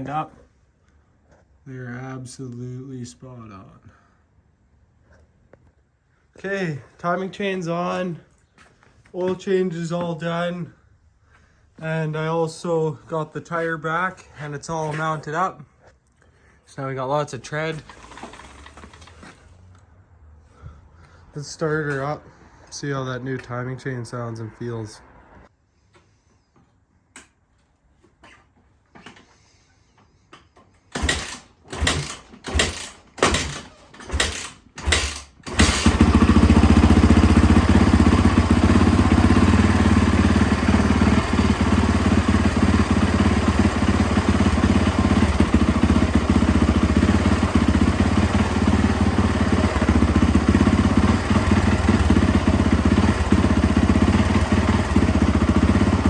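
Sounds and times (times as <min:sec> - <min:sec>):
motorcycle engine turning over: 0:17.7 - 0:19.5, 0:30.9 - 0:56.0
motorcycle engine running: 0:34.3 - 0:56.0.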